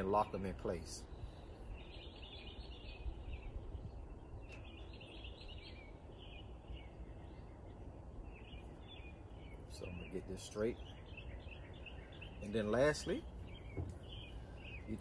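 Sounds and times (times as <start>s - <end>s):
low background rumble: 0.0s - 15.0s
small birds chirping: 0.0s - 15.0s.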